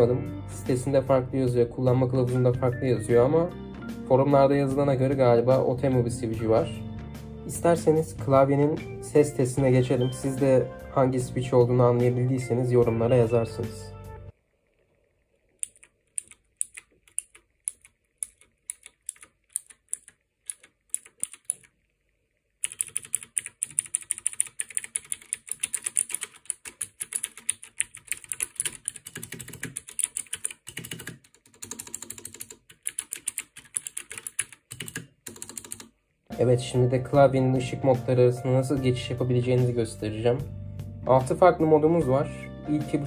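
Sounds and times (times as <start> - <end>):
clicky mechanical keyboard typing: 15.6 - 21.8, 22.6 - 35.9.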